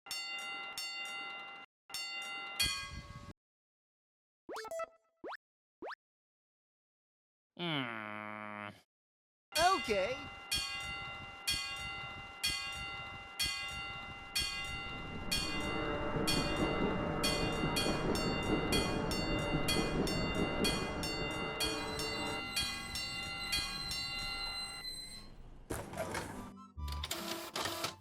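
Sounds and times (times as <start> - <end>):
railroad crossing bell ringing: 0.1 - 3.3, 9.6 - 25.4
train rumbling past: 12.7 - 24.8.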